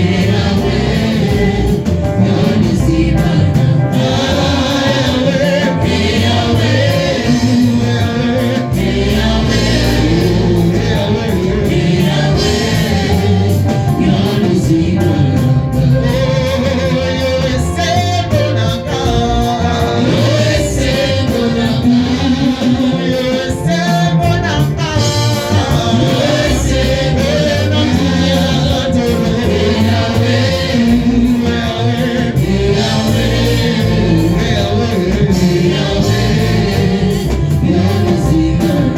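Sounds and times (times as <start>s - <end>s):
choir singing gospel: 0.0s - 38.9s
musical accompaniment with bass: 0.0s - 38.9s.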